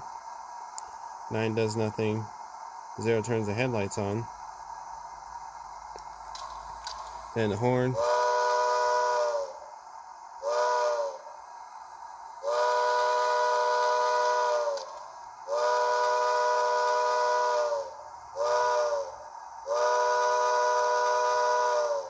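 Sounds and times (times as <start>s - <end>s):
model train steam whistle: 7.4s - 9.7s, 10.4s - 11.4s, 12.4s - 22.0s.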